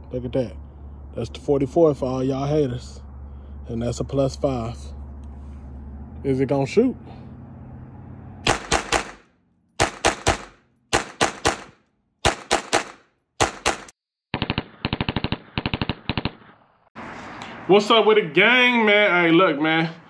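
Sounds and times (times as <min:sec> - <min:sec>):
pistol gunshots: 0:08.4 - 0:16.6.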